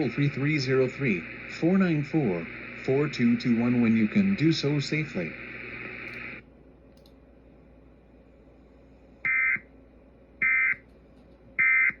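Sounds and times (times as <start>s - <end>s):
alert data tone bursts: 0.0s - 6.4s.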